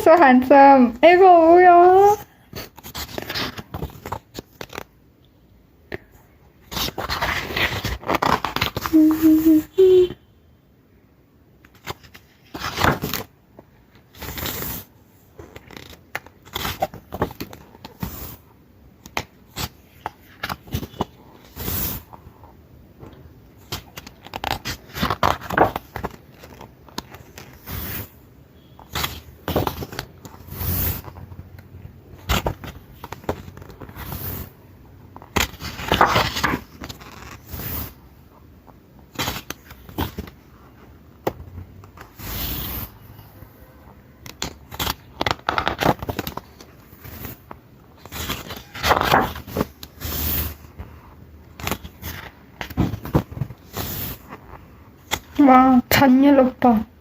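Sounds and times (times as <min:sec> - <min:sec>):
paper rustling and scraping: 0:02.1 - 0:04.9, 0:06.6 - 0:09.6, 0:11.7 - 0:13.3, 0:13.9 - 0:18.5, 0:19.2 - 0:22.2, 0:23.6 - 0:34.6, 0:35.2 - 0:38.0, 0:39.1 - 0:40.9, 0:41.9 - 0:43.2, 0:44.3 - 0:55.6.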